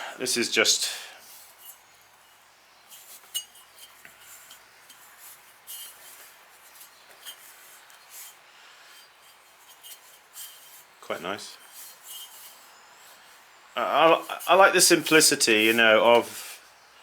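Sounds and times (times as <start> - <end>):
pottery clinking and scraping: 1.2 - 16.4.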